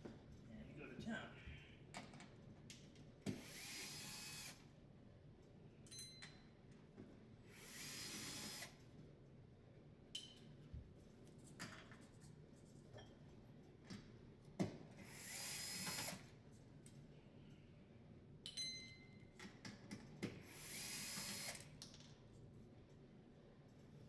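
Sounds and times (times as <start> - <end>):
cordless screwdriver running: 3.4 - 4.6, 7.5 - 8.7, 15.1 - 16.2, 20.5 - 21.6.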